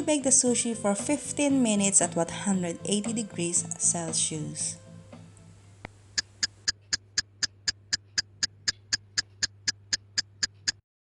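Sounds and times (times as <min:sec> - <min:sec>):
clockwork timer ticking: 0:06.1 - 0:10.8.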